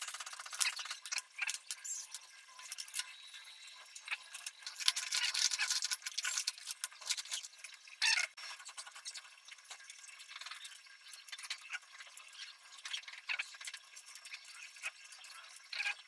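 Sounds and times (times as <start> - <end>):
small hard parts clicking: 0.0 - 3.2.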